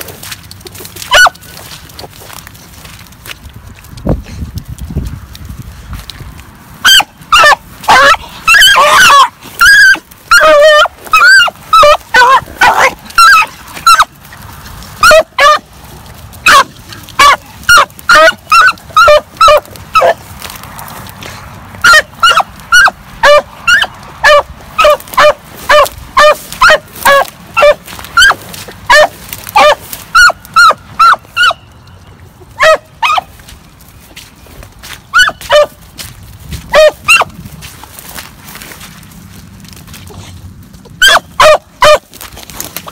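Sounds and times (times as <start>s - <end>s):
dog barking: 1.1s - 1.3s, 6.8s - 14.1s, 15.0s - 15.6s, 16.5s - 20.2s, 21.8s - 31.6s, 32.6s - 33.3s, 35.1s - 35.8s, 36.7s - 37.3s, 41.0s - 42.0s.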